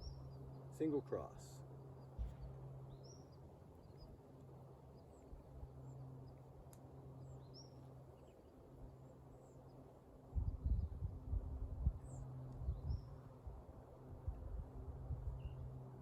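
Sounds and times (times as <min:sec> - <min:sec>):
low hum: 0:01.5 - 0:16.0.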